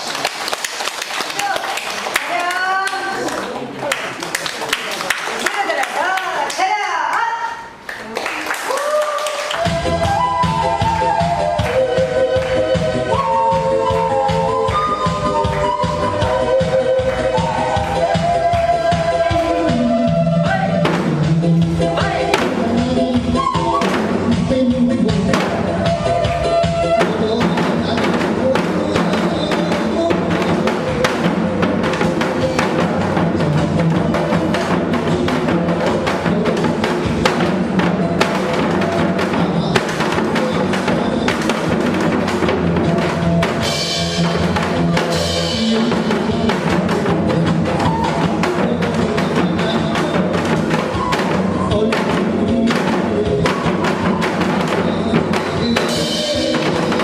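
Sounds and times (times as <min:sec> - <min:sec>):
pitched music accompaniment: 0:09.3 - 0:57.0
hourglass drums fast rhythm: 0:15.1 - 0:57.0.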